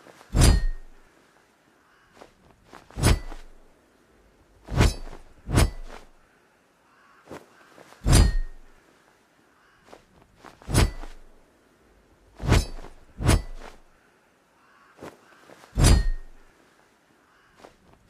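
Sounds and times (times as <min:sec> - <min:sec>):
sword blade metallic hits: 0:00.4 - 0:01.0, 0:08.1 - 0:08.7, 0:10.7 - 0:11.2, 0:15.8 - 0:16.4.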